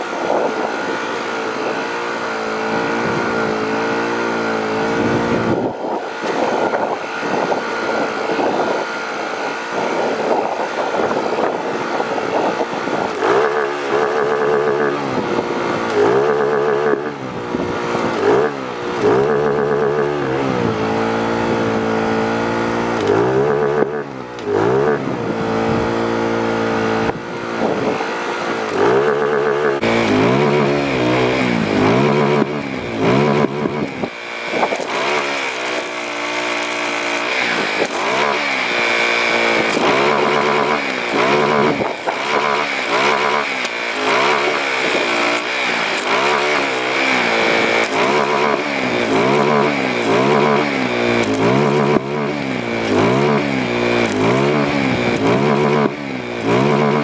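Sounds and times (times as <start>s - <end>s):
engine revving: 0.0s - 57.0s
steady high whine: 0.0s - 57.0s.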